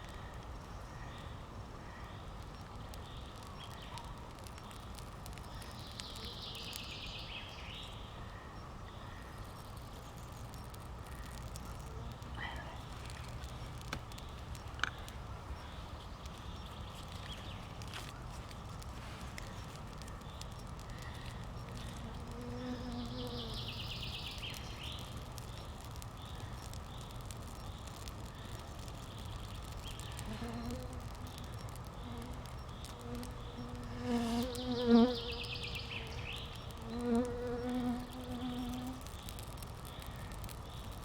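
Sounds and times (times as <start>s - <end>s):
flying insect buzzing: 21.8s - 24.0s, 30.2s - 39.3s.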